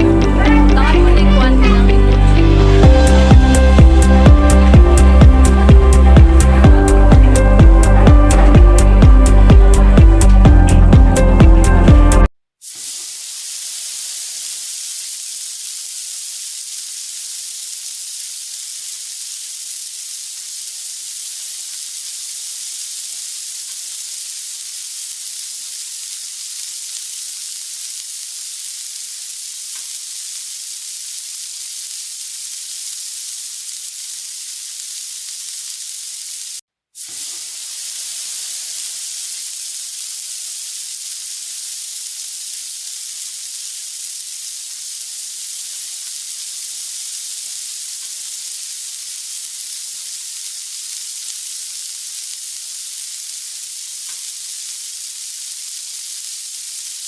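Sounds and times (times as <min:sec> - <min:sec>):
pork sizzling on a grill: 0:12.6 - 0:57.0.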